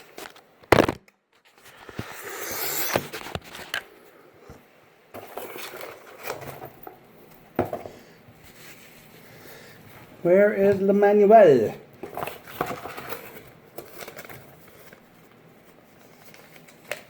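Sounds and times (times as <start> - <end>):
packaging rustling and crinkling: 12.0 - 17.0.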